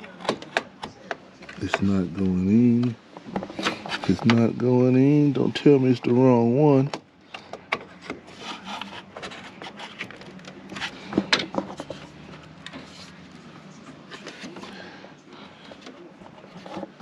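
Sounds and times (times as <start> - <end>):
small clicks and scraping: 6.8 - 17.0.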